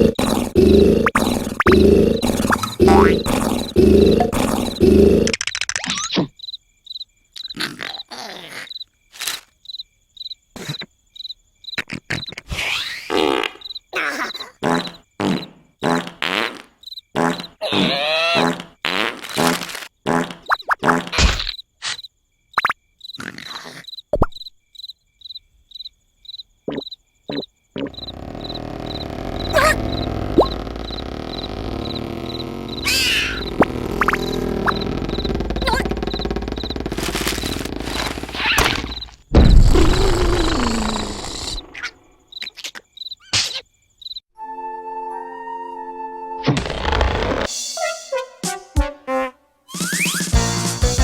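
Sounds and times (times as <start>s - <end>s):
crickets chirping: 0.0s - 12.4s, 13.1s - 18.6s, 19.4s - 44.3s
cartoon sound effects: 1.0s - 3.7s, 17.6s - 18.7s, 27.3s - 39.0s, 46.4s - 48.5s, 49.1s - 50.5s
loud steady noise: 28.0s - 38.4s
loud rattling: 28.4s - 39.0s.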